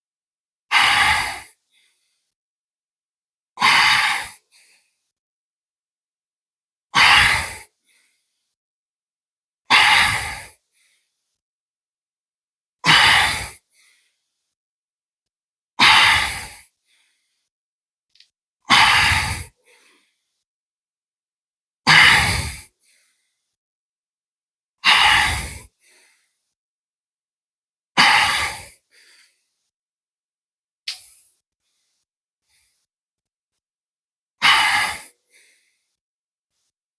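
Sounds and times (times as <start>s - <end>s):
man exhaling forcefully: 0.7s - 1.5s, 3.6s - 4.7s, 7.0s - 7.6s, 9.7s - 10.6s, 12.9s - 13.6s, 15.8s - 16.6s, 18.7s - 19.5s, 21.9s - 22.6s, 24.8s - 25.7s, 28.0s - 29.2s, 34.4s - 35.5s.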